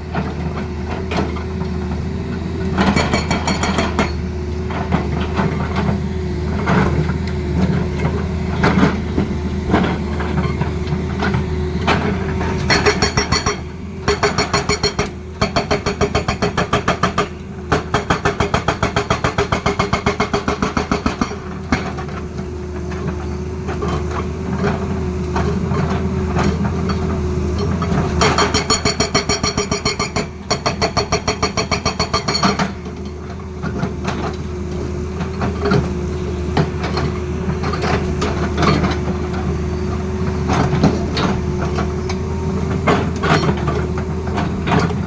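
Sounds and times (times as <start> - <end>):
diesel engine running: 0.0 - 31.2, 32.6 - 45.0
hydraulic breaker hammering: 12.6 - 21.4.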